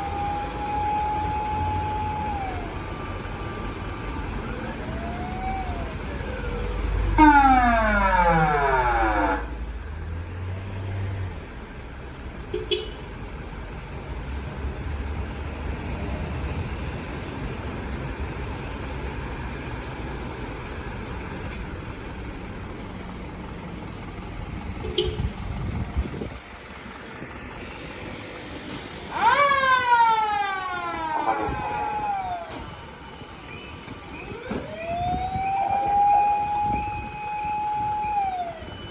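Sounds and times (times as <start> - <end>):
siren: 0.0 - 10.3, 26.3 - 38.9
vehicle engine rumble: 0.0 - 38.9.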